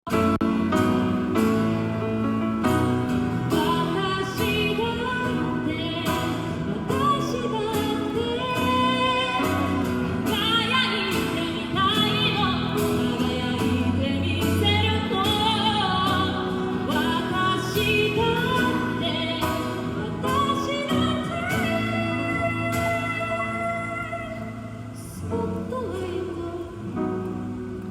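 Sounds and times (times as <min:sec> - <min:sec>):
person singing a pop song: 0:03.5 - 0:27.3.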